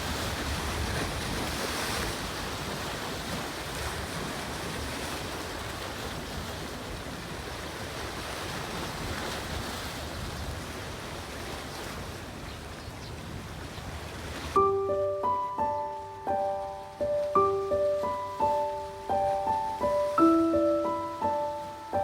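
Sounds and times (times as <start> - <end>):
ocean surf washing: 0.0 - 22.0
piano notes: 14.6 - 22.0.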